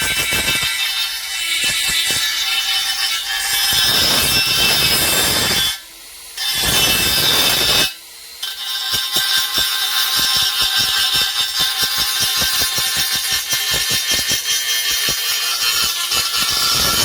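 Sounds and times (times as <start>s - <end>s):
welding hiss and crackle: 0.0s - 5.8s, 6.4s - 17.0s.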